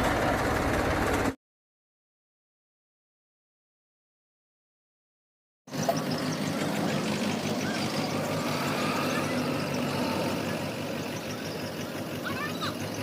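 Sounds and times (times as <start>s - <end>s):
tractor diesel engine running: 0.0s - 1.4s, 5.7s - 13.0s.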